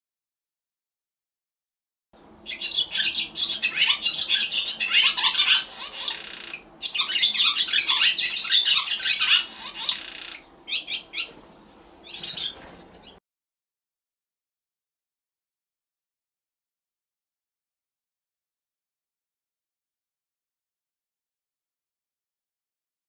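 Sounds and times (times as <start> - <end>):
swallows twittering: 2.4 - 13.2.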